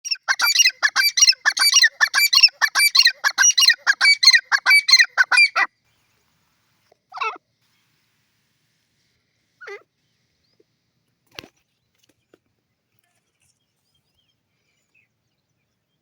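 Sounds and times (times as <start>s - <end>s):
francolin calling: 0.1s - 5.7s.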